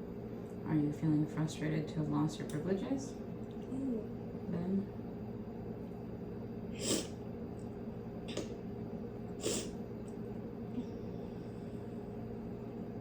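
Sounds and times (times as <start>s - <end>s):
child sniffing: 6.8s - 7.2s, 9.4s - 9.7s.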